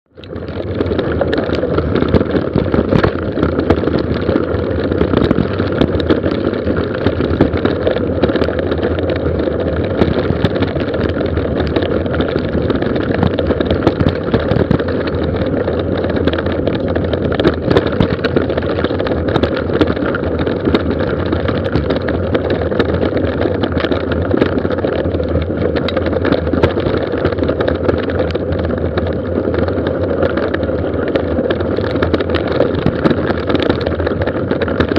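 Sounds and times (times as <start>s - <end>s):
bike clicks and rattles: 0.1s - 34.9s
bike tyres on loose gravel: 0.1s - 34.9s.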